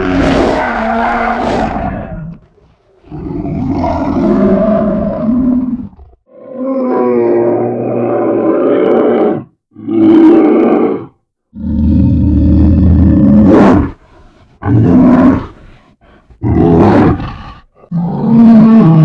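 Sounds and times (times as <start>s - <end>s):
bear roaring: 0.0s - 14.0s, 14.6s - 19.0s.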